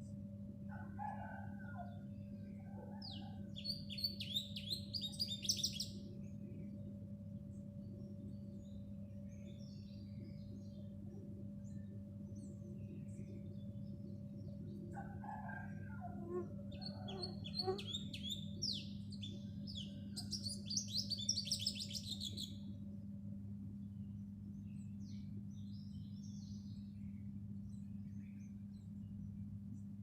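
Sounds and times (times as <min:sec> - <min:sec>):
steady low hum: 0:00.0 - 0:01.1, 0:01.8 - 0:30.0
sparrows chirping: 0:03.0 - 0:06.0, 0:12.4 - 0:22.6.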